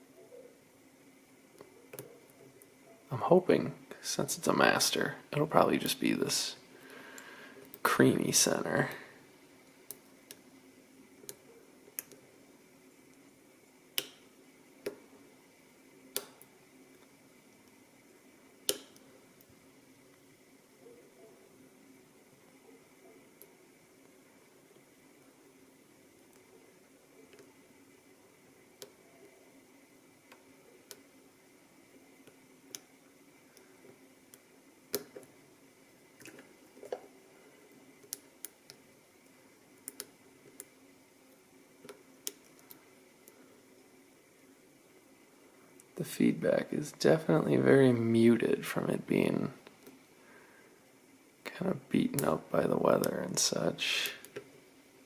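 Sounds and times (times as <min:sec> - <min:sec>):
faint steady hum: 0:00.0 - 0:55.0.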